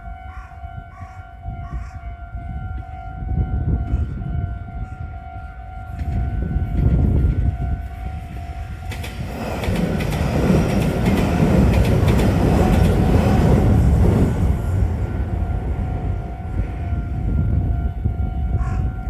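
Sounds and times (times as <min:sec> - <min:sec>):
crossing warning bell ringing: 0:00.0 - 0:19.0
train rumbling past: 0:00.0 - 0:19.0
train wheel clicks: 0:08.8 - 0:14.4.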